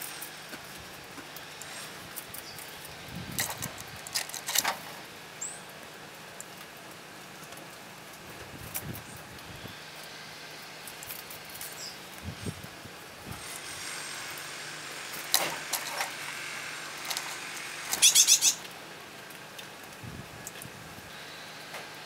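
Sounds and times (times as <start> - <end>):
small birds chirping: 5.4 - 5.7, 11.4 - 12.1, 17.9 - 18.7.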